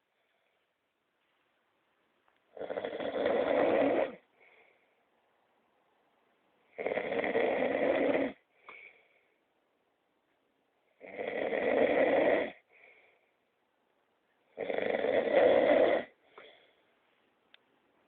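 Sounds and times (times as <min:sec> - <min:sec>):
faint breath: 0:00.0 - 0:01.5, 0:04.3 - 0:05.2, 0:08.5 - 0:09.6, 0:12.6 - 0:13.6, 0:16.2 - 0:17.4
man snoring: 0:02.5 - 0:04.2, 0:06.7 - 0:08.4, 0:11.0 - 0:12.6, 0:14.6 - 0:16.2.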